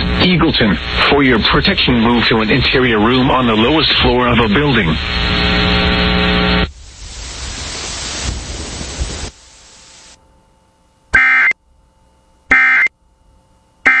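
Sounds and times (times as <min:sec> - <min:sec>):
buzzy data bursts: 0:00.0 - 0:10.2
static hiss: 0:00.0 - 0:10.4.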